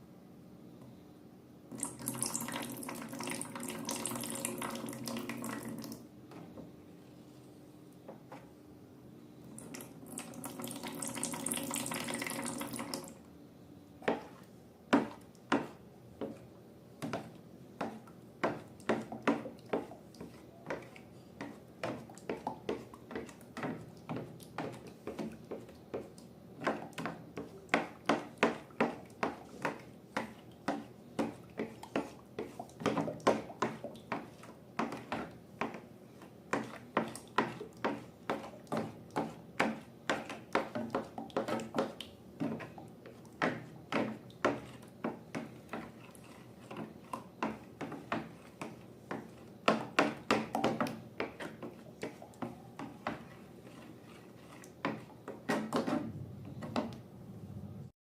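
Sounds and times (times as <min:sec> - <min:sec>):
liquid pouring: 0:09.8 - 0:13.2
slime being stirred: 0:14.0 - 0:57.0.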